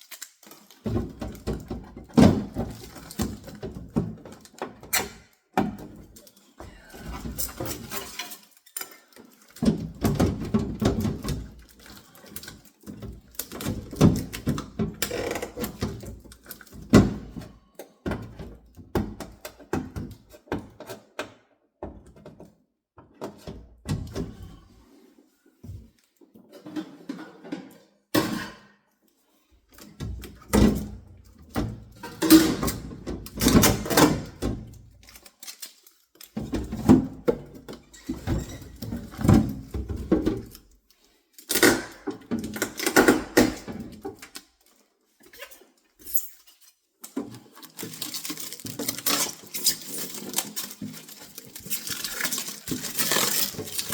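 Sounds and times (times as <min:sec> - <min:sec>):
packaging rustling: 0:44.1 - 0:53.9.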